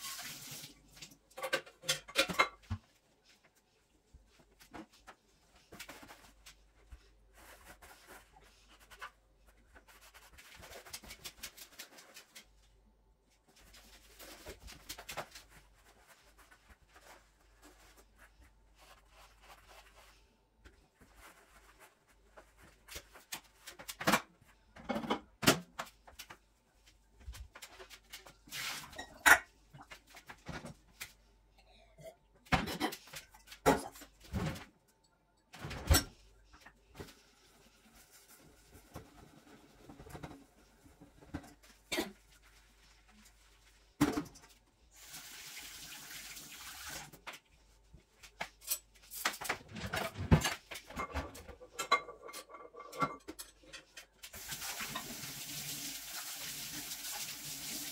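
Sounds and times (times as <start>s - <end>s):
soft rubbing: 13.2s - 23.1s.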